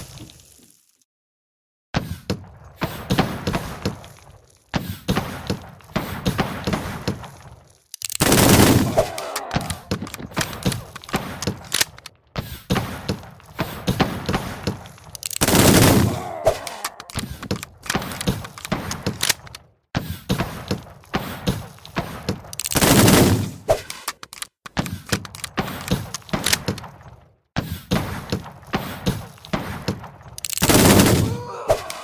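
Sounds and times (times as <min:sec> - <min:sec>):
rapid gunshots: 0:08.0 - 0:12.0, 0:15.3 - 0:19.5, 0:20.4 - 0:24.1, 0:27.8 - 0:32.0
loud gun blasts: 0:08.2 - 0:11.7, 0:15.4 - 0:16.9, 0:28.0 - 0:32.0.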